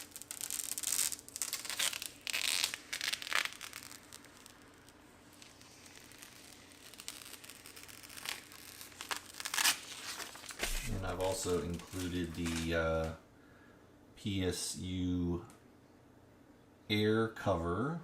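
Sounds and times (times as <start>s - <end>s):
plastic film peeling: 0.0s - 13.2s.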